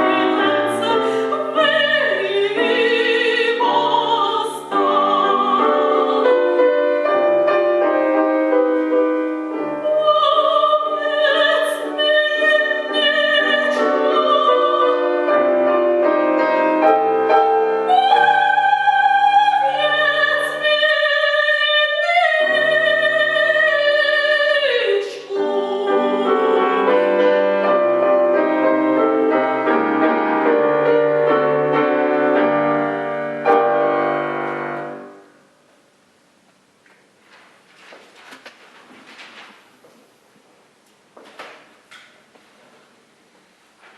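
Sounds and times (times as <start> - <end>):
soprano singing opera: 0.0 - 7.7, 9.5 - 27.8
piano accompaniment: 0.0 - 35.5.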